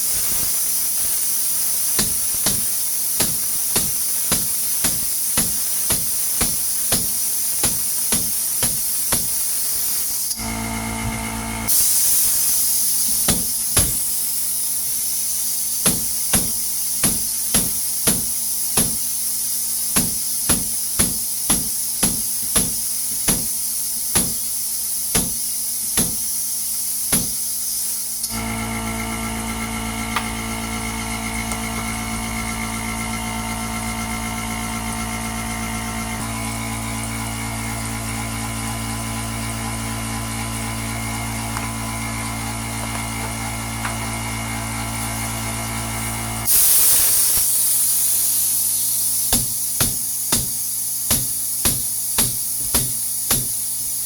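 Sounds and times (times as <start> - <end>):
steady hiss: 11.7 - 28.0, 46.5 - 54.0.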